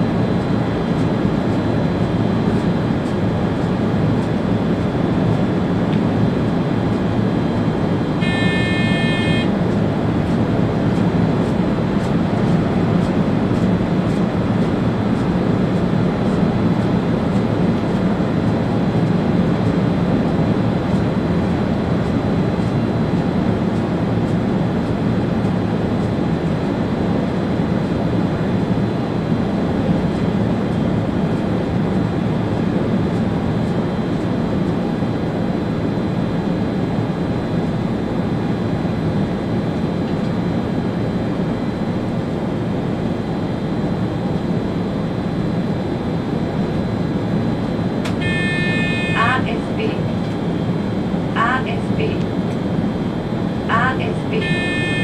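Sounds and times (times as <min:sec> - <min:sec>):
high-pitched tone: 0:08.2 - 0:09.5, 0:48.2 - 0:49.7, 0:54.1 - 0:55.0.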